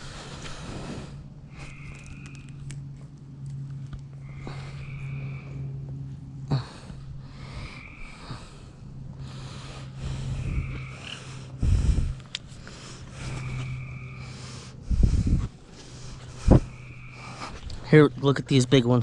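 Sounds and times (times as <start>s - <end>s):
person breathing heavily: 0.0s - 2.2s, 4.1s - 17.9s
steady low hum: 0.0s - 19.0s.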